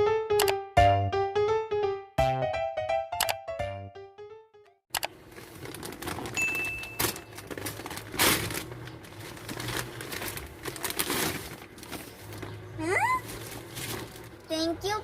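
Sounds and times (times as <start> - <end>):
sharp clicks: 0.4 - 0.6, 3.2 - 3.4
packaging crinkling and rustling: 5.2 - 14.5.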